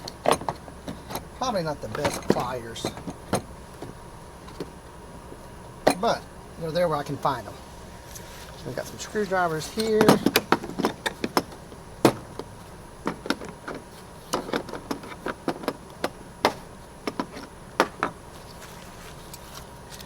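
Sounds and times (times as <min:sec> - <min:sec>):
hand tools clicking and clacking: 0:00.0 - 0:04.7, 0:09.0 - 0:18.2.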